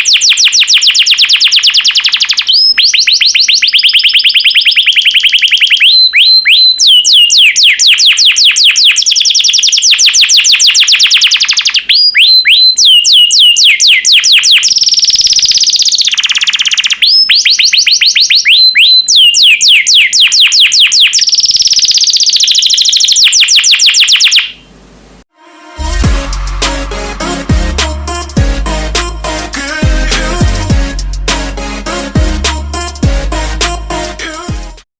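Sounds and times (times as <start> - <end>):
canary singing trills: 0.0 - 24.7.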